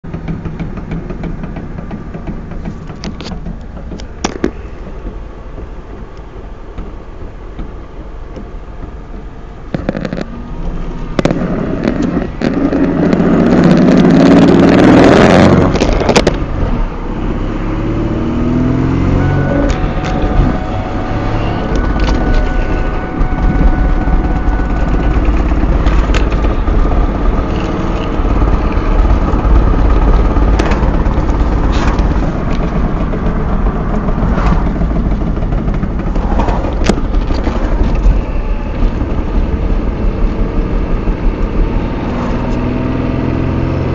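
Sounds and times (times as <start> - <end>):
car rear end knocking: 0.0 - 10.4, 19.2 - 41.3
road and engine noise: 0.0 - 43.9
rushing noise: 18.1 - 43.0.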